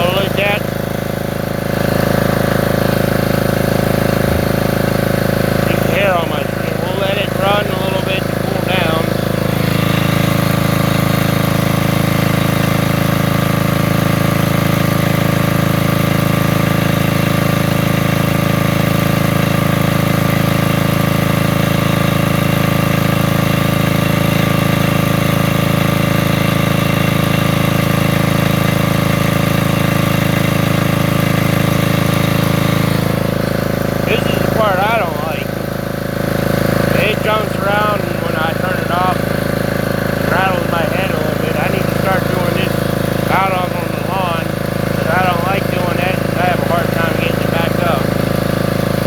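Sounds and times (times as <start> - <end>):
generator engine running: 0.0 - 49.0.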